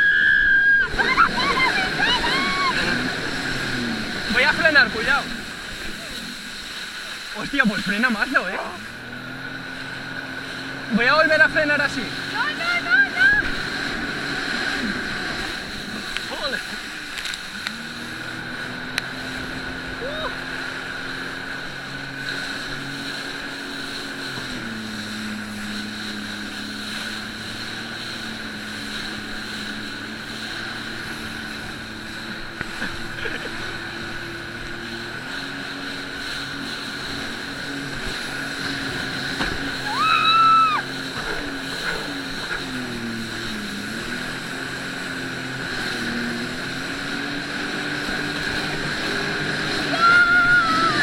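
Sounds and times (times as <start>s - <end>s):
high whine: 0.0s - 21.9s
jet ski engine running: 0.0s - 51.0s
rush of water and wind: 0.0s - 51.0s.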